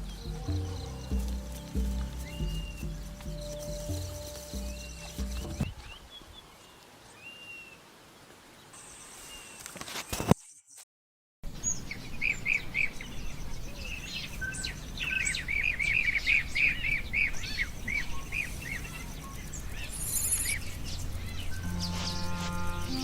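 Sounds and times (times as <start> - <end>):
low outdoor rumble: 0.0 - 5.8
bird chirping: 0.0 - 7.8, 11.5 - 23.0.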